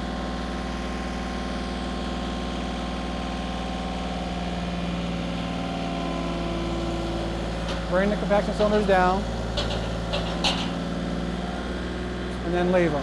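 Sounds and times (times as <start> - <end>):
hydraulic pump running: 6.6 - 11.3.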